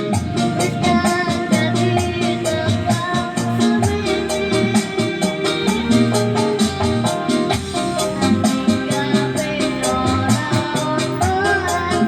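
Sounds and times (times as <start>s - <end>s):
live street music: 0.0s - 12.0s.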